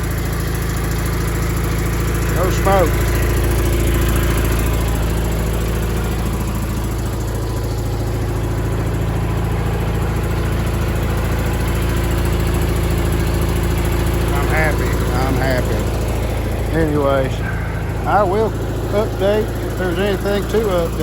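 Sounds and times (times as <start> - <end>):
lawn tractor engine running: 0.0 - 21.0.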